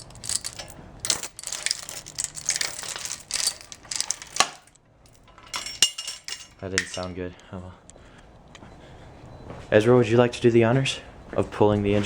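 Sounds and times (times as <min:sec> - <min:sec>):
metal clinking and scraping: 0:00.0 - 0:07.2.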